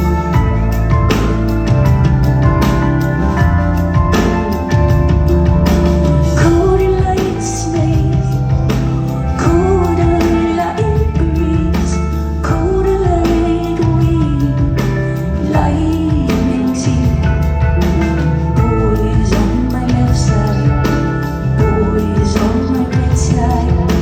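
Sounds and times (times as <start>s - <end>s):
live rock band playing: 0.0s - 24.0s
woman singing: 6.1s - 24.0s.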